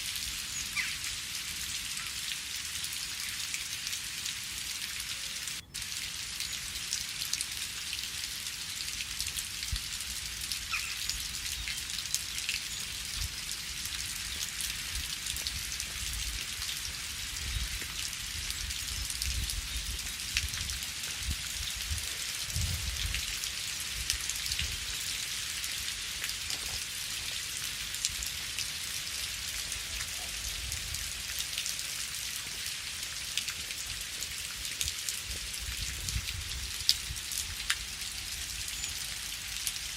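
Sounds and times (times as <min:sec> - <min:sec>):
steady rain hiss: 0:00.0 - 0:39.9
raindrops ticking close by: 0:04.9 - 0:39.9.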